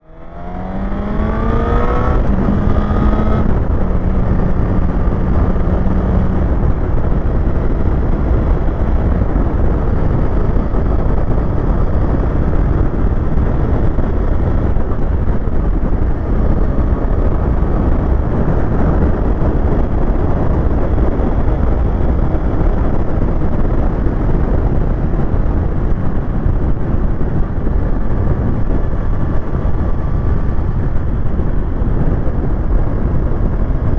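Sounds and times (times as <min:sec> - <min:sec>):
motorcycle engine revving: 0:00.0 - 0:25.7
wind buffeting helmet microphone: 0:00.0 - 0:33.9.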